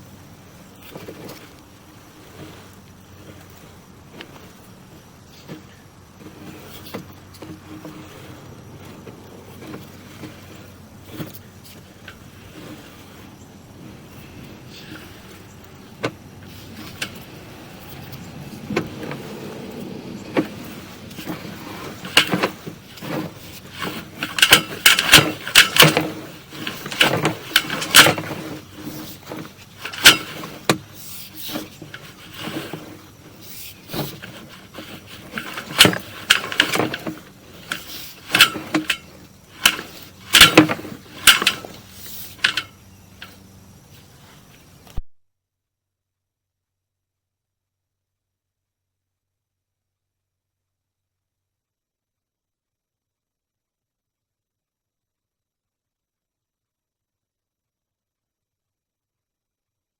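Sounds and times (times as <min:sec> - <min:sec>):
faint steady hum: 0:00.0 - 0:45.0.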